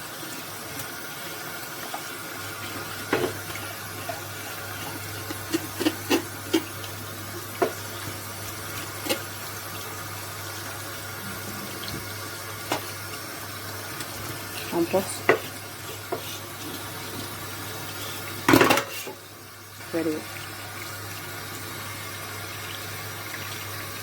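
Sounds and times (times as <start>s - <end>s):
tap water running into sink: 0.0s - 24.0s.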